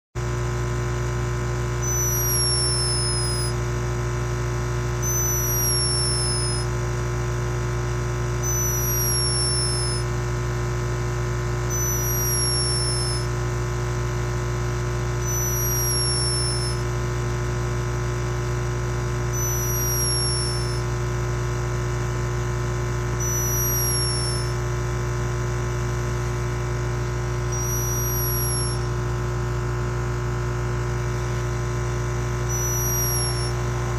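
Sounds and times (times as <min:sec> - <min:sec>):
steady electrical hum: 0:00.8 - 0:17.9, 0:18.7 - 0:21.0, 0:23.1 - 0:25.0, 0:26.2 - 0:33.9
hummingbird snoring squeak: 0:01.8 - 0:03.6, 0:05.0 - 0:06.7, 0:08.4 - 0:10.1, 0:11.7 - 0:13.3, 0:15.2 - 0:16.9, 0:19.4 - 0:20.9, 0:23.2 - 0:24.6, 0:27.5 - 0:28.9, 0:32.4 - 0:33.9.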